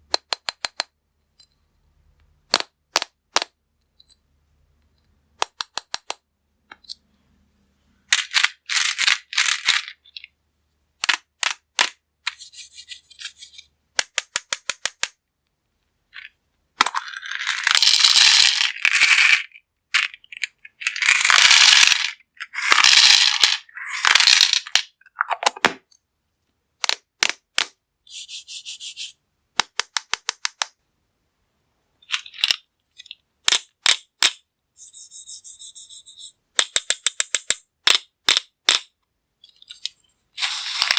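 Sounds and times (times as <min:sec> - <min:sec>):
candies clattering into container: 0:08.1 - 0:10.1, 0:16.2 - 0:25.6, 0:40.4 - 0:40.9.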